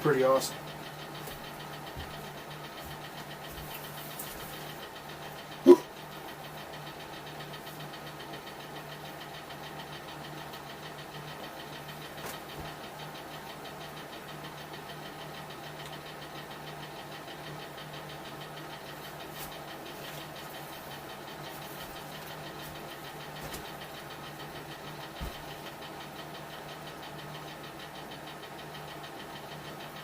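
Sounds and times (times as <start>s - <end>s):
heater drone and hum: 0.0s - 30.0s.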